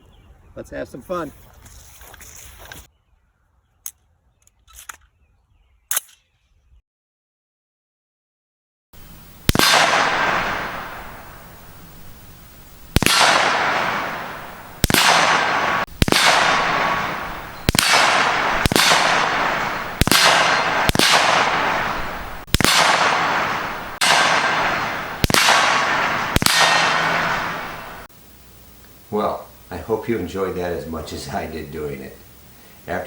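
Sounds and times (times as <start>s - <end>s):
rifle shots with echo: 9.0s - 28.1s.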